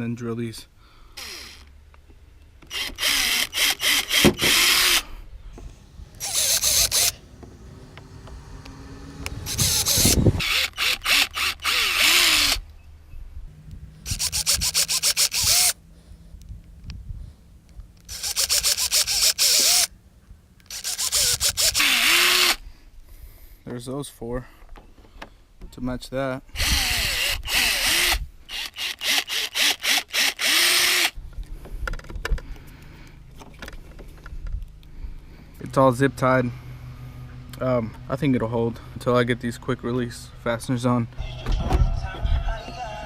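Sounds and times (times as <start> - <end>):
cordless drill boring through plastic: 1.2 - 1.7, 2.6 - 5.1, 6.0 - 7.2, 9.3 - 12.6, 14.1 - 15.8, 18.0 - 19.9, 20.6 - 22.6, 26.6 - 31.2.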